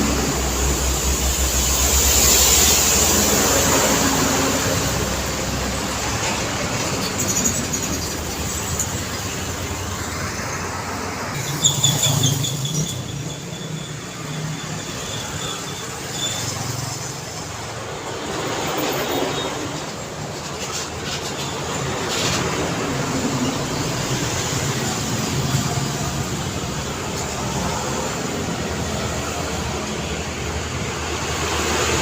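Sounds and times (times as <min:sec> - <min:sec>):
road traffic passing: 0:00.0 - 0:32.0
truck engines humming: 0:00.0 - 0:32.0
brief high squeal: 0:11.4 - 0:17.0.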